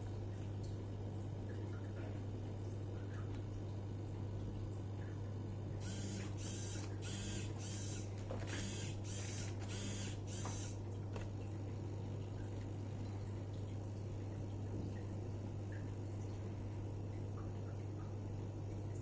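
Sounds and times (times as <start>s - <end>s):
steady low hum: 0.0s - 19.0s
small mechanism whirring: 5.8s - 10.8s.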